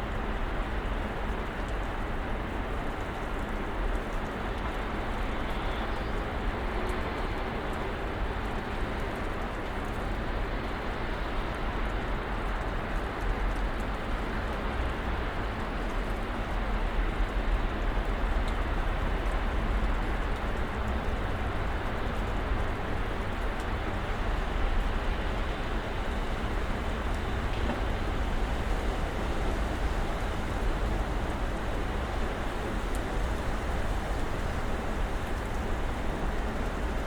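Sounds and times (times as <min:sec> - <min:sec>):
snowstorm wind noise: 0:20.7 - 0:37.0.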